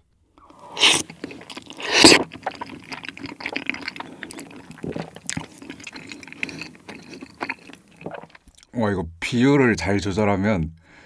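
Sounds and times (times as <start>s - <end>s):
wet squishy chewing: 0.6s - 8.6s.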